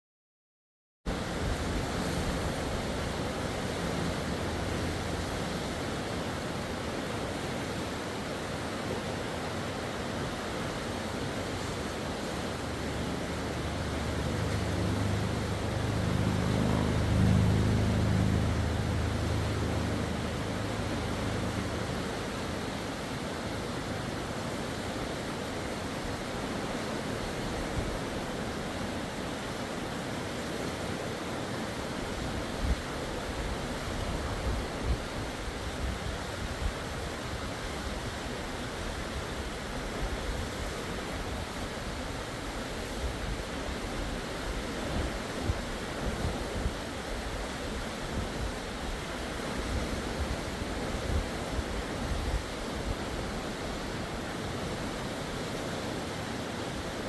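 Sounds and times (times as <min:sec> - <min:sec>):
river rushing: 0:01.1 - 0:57.0
low rumble: 0:12.6 - 0:22.6.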